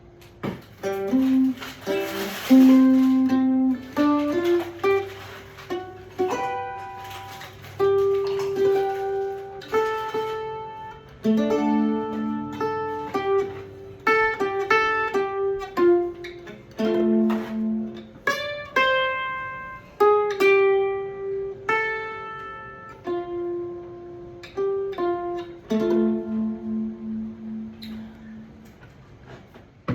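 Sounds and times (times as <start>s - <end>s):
electric mandolin picking: 0.0s - 29.9s.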